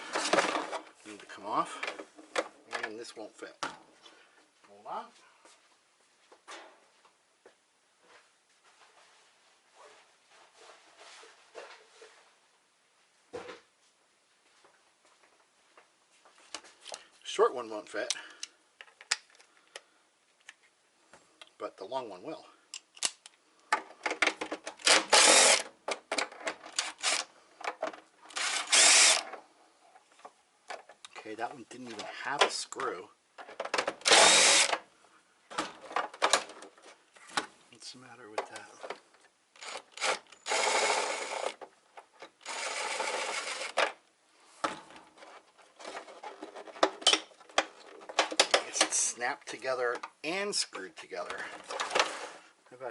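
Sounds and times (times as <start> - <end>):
plastic parts clicking: 22.7 - 29.4, 44.6 - 49.0
screwdriver rasping: 24.8 - 25.7, 26.8 - 27.3, 28.3 - 29.3, 34.0 - 34.7
screwdriver rasping on plastic: 28.3 - 29.3.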